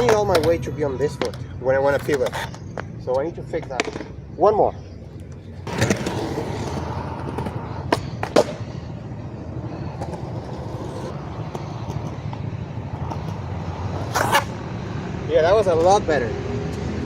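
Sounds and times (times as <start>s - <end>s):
skateboard wheels rolling: 0.0s - 2.9s, 5.0s - 16.0s
skateboard landing: 5.6s - 8.8s, 9.9s - 14.6s
skateboard tail pop: 7.4s - 8.6s.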